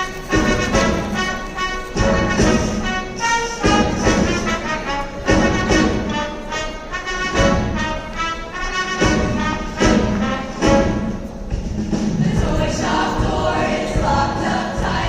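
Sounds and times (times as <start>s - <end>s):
instrumental ensemble playing: 0.0s - 15.0s
choir singing: 12.0s - 15.0s.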